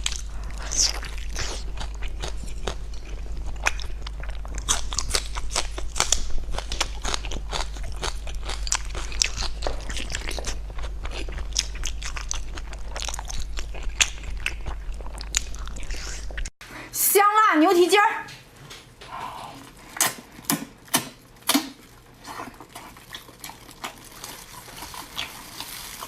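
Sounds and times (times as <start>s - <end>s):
person chewing crunchy food: 0.0s - 16.5s, 19.2s - 26.0s
steady low hum: 0.0s - 17.6s.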